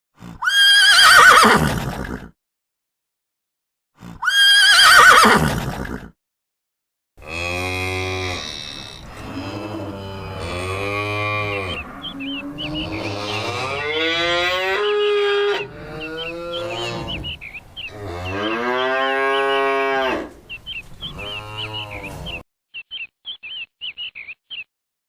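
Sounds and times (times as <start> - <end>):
cow mooing: 7.2 - 20.4, 21.0 - 22.4
small birds chirping: 11.5 - 14.2, 15.5 - 19.6, 20.4 - 24.7.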